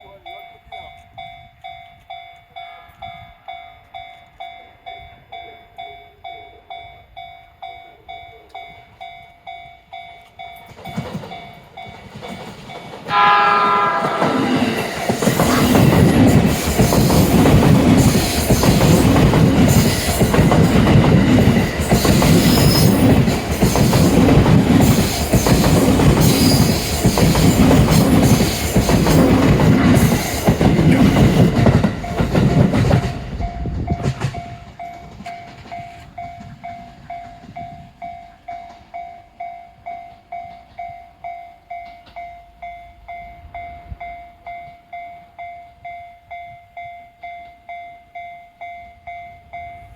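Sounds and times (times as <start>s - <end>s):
level crossing warning bell: 0.0s - 49.9s
electric train passing at speed: 0.1s - 49.9s
train wheels clacking: 10.2s - 45.1s.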